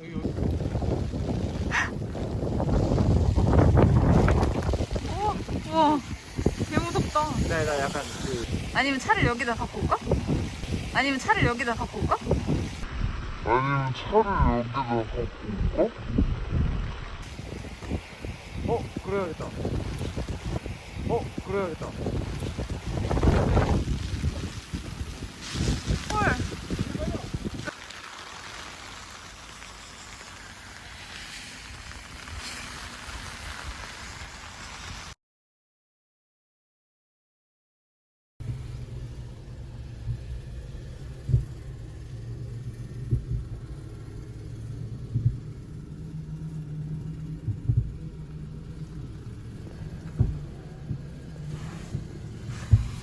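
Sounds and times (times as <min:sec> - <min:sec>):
steady low rumble: 0:00.0 - 0:27.7, 0:38.4 - 0:53.0
steady rain: 0:00.0 - 0:35.2, 0:38.4 - 0:53.0
wind: 0:00.0 - 0:35.2, 0:38.4 - 0:53.0.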